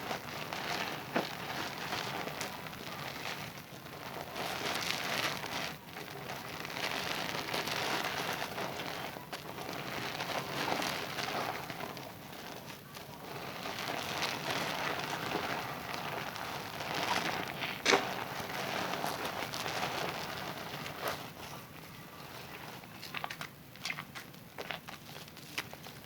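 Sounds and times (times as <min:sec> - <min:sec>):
wet hands rubbing soap: 0:13.3 - 0:26.0.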